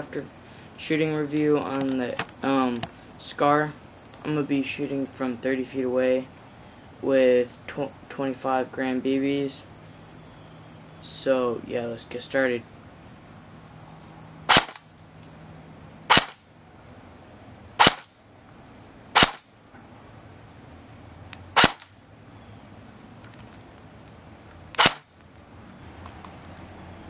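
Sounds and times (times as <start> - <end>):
airsoft gun single shots: 14.5 - 14.9, 16.1 - 16.4, 17.8 - 18.2, 19.1 - 19.5, 21.6 - 21.9, 24.8 - 25.1.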